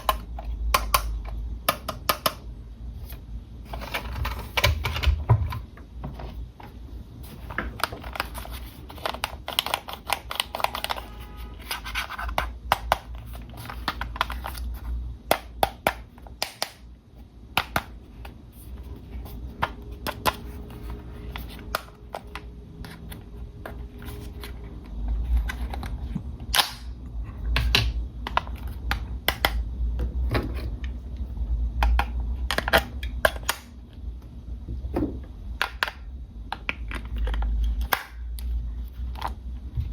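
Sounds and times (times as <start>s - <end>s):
hard plastic clicking and scratching: 0.0s - 16.8s, 35.6s - 39.9s.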